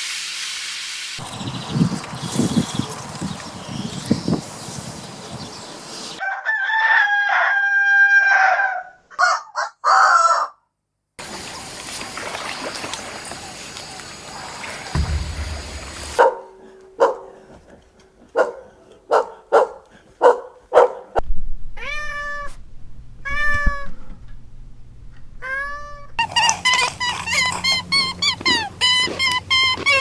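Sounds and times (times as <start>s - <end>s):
cat meowing: 21.8s - 22.6s, 23.2s - 24.0s, 25.4s - 26.1s.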